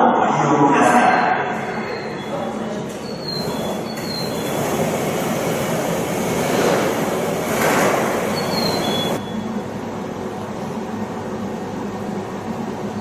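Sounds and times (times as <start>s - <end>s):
train rushing past: 0.9s - 9.8s
high squeals: 1.3s - 9.6s.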